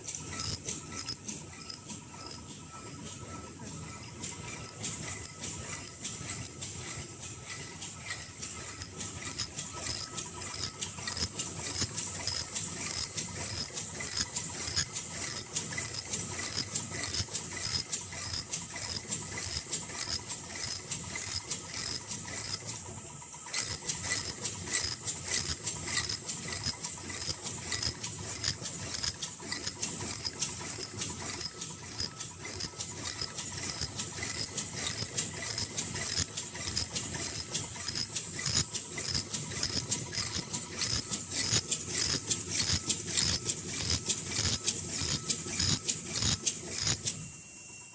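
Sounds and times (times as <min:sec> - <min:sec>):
constant high hiss: 0:00.0 - 0:47.9
machine clicks and rattles: 0:00.0 - 0:47.9.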